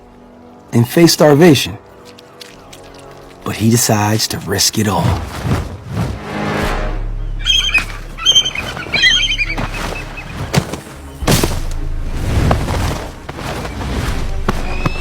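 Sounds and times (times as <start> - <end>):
low music drone: 0.0 - 15.0
wings flapping: 4.0 - 6.3, 7.5 - 15.0
large birds squawking: 7.4 - 11.2.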